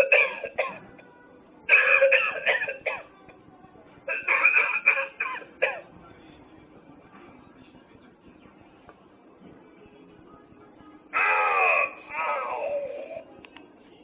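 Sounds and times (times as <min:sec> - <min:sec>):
recorded coughing from small speaker: 0:00.0 - 0:00.9, 0:01.7 - 0:03.1, 0:04.1 - 0:05.9.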